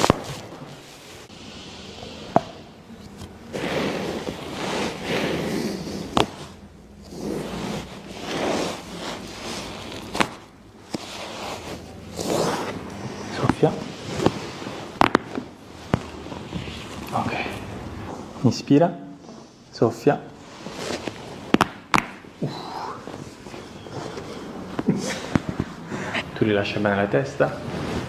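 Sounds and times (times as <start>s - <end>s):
rustling on a table: 3.0s - 17.2s.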